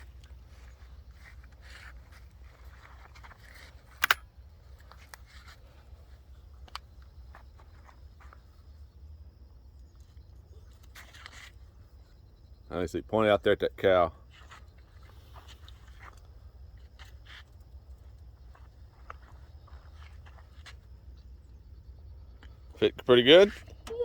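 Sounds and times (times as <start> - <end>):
handling ticks: 0.0 - 8.9, 14.2 - 24.0
shotgun snapping shut: 3.9 - 4.3
steady low rumble: 11.5 - 23.9.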